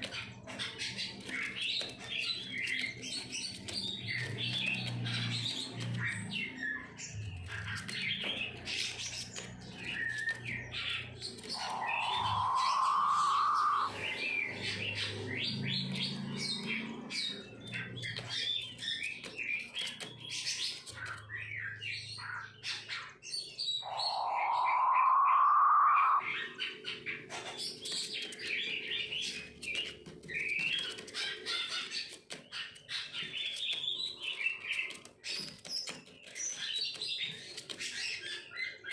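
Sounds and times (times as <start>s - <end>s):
high bird chirping: 9.3s - 15.9s, 17.3s - 27.1s.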